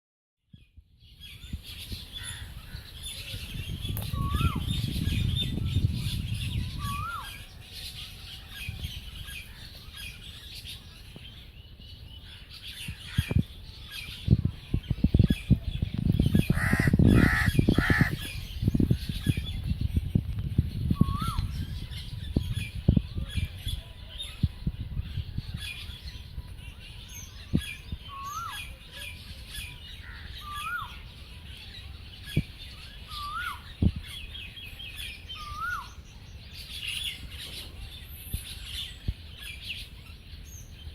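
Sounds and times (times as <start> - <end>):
wind rumble on microphone: 0.5 - 40.9
birds chirping: 0.7 - 40.9
high bird chatter: 0.7 - 40.9
crow cawing: 16.5 - 18.2.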